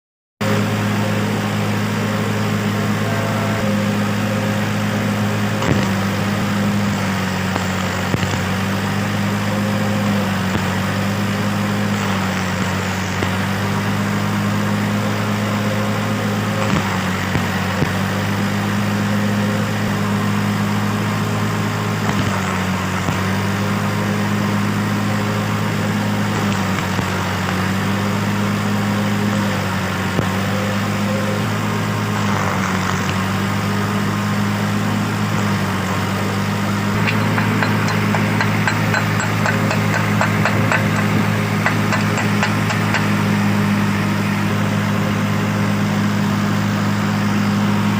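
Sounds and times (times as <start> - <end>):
welding buzz and crackle: 4.0 - 15.6, 16.3 - 19.1, 20.3 - 30.5, 32.1 - 33.6, 35.2 - 44.2.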